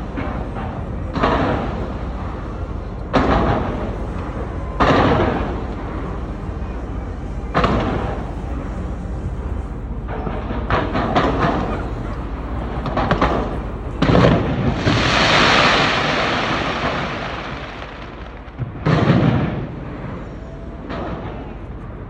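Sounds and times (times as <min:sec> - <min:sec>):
fireworks crackling: 0:12.9 - 0:20.2
firework booms: 0:12.9 - 0:20.3
loud crackling hiss: 0:14.1 - 0:18.7.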